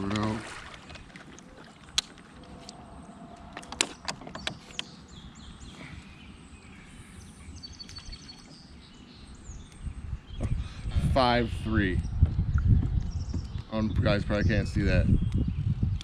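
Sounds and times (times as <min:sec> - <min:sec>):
faint outdoor background: 0:00.0 - 0:16.0
clicks and knocks in kayak: 0:03.4 - 0:05.0.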